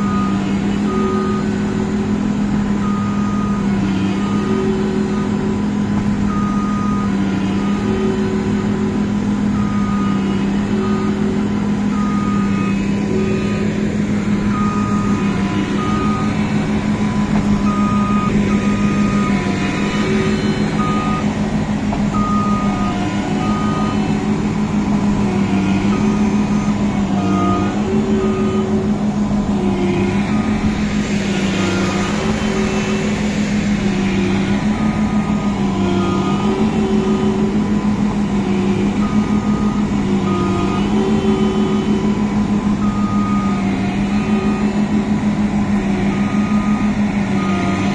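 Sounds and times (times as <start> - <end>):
combine harvester engine running: 0.0 - 47.9
short electronic beeps: 9.6 - 21.4, 22.1 - 24.2.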